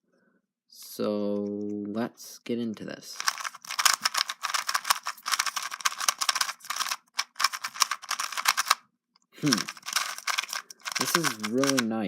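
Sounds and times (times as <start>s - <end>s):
puzzle cube clicking: 3.2s - 8.8s, 9.4s - 12.0s.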